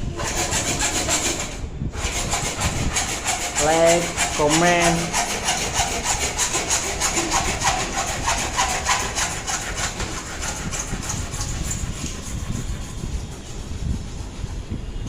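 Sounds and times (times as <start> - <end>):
hand saw cutting plastic pipe: 0.0 - 14.3.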